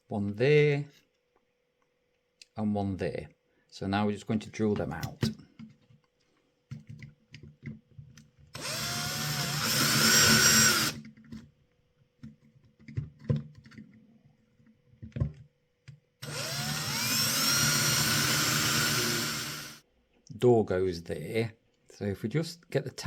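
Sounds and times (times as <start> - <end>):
electric drill whining: 8.6 - 11.0, 16.2 - 19.8.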